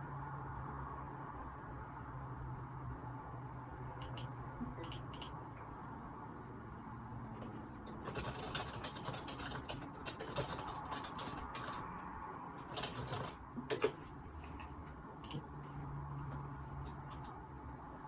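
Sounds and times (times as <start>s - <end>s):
computer keyboard typing: 4.0s - 5.4s, 7.4s - 15.6s, 16.2s - 17.5s.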